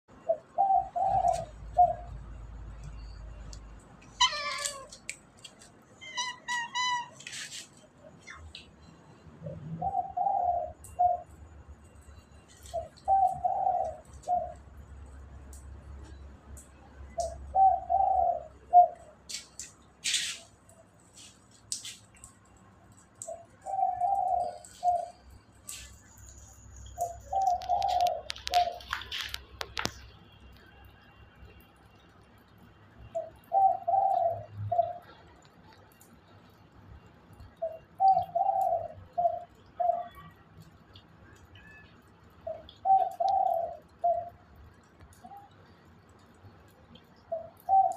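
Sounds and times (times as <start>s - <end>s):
dove cooing: 0.2s - 2.2s, 9.5s - 11.3s, 12.6s - 14.8s, 17.2s - 19.2s, 23.2s - 25.9s, 27.0s - 29.5s, 33.1s - 35.3s, 37.6s - 40.4s, 41.6s - 44.5s, 47.2s - 47.9s
scratchy noises: 4.4s - 7.9s, 19.4s - 22.0s.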